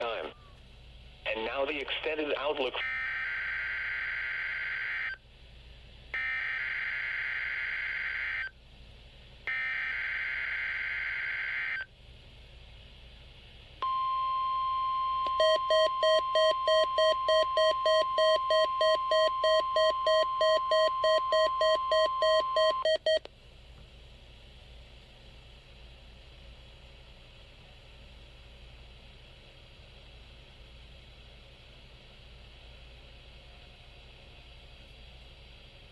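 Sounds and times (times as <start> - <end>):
steady warning alarm tone: 6.2 - 8.5, 9.5 - 11.8, 13.8 - 23.2.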